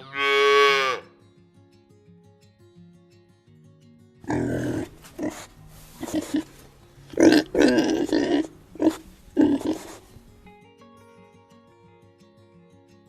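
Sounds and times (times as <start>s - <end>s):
pig calling: 0.0s - 1.0s, 4.3s - 10.2s.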